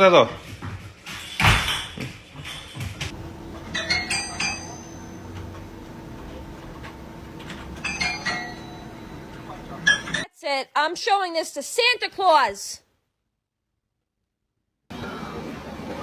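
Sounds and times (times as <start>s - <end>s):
glass dishware clinking: 1.1s - 5.7s, 7.5s - 10.3s
steady low hum: 2.5s - 10.2s.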